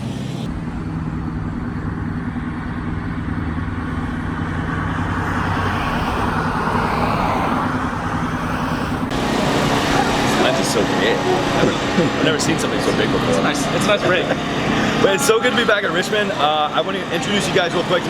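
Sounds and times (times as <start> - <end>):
engine running steadily: 0.0 - 18.0
rushing noise: 4.1 - 15.5.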